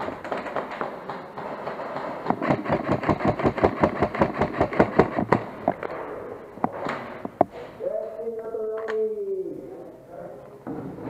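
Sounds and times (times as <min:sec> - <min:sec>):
airsoft rifle rapid firing: 0:00.0 - 0:05.7.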